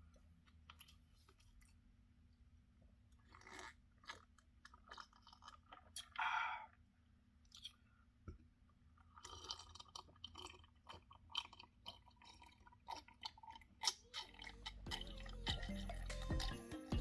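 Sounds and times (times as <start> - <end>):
close chewing with mouth clicks: 3.2 - 6.2, 7.5 - 7.8, 9.0 - 17.0
background music: 14.4 - 17.0.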